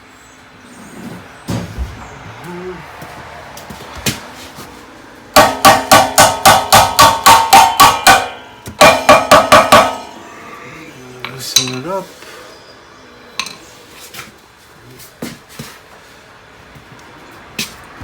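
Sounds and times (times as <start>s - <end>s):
hammer clanging on metal: 5.4s - 10.3s, 11.2s - 12.0s.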